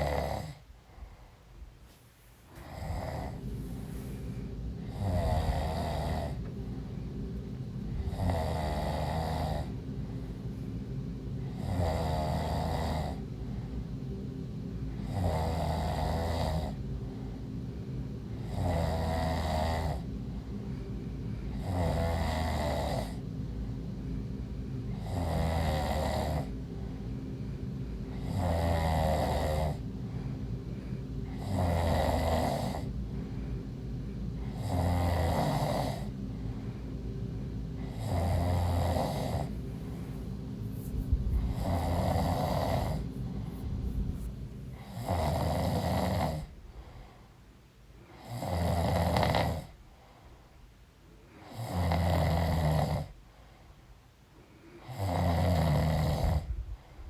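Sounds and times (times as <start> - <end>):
woman snoring: 0.0 - 0.6, 2.5 - 4.1, 4.8 - 6.5, 7.9 - 9.8, 11.4 - 13.3, 14.9 - 17.4, 18.3 - 20.1, 21.5 - 23.2, 24.9 - 26.6, 28.1 - 29.8, 31.2 - 33.0, 34.4 - 36.1, 37.8 - 46.6, 48.1 - 49.8, 51.4 - 53.2, 54.8 - 56.6
low steady hum: 0.0 - 57.0.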